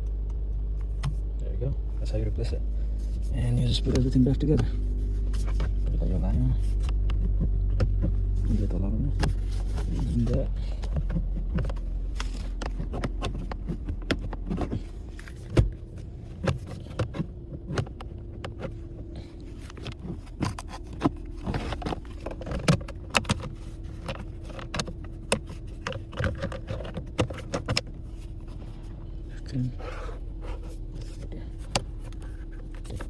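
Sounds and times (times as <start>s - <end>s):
faint steady hum: 0.0s - 33.0s
plastic trim clicking and rattling: 19.6s - 28.0s.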